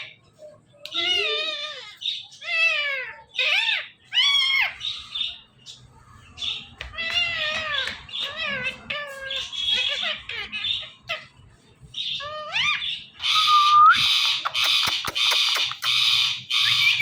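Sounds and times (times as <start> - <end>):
parakeet harsh squawks: 1.0 - 5.4, 6.4 - 11.3, 12.0 - 17.0
parakeet chirps and whistles: 12.0 - 17.0.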